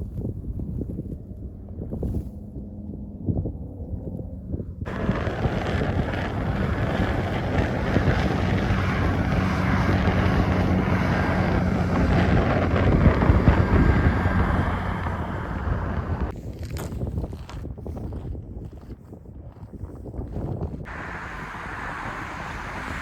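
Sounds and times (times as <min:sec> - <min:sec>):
wind gusting on microphone: 0:00.0 - 0:23.0
low hum: 0:00.4 - 0:16.3.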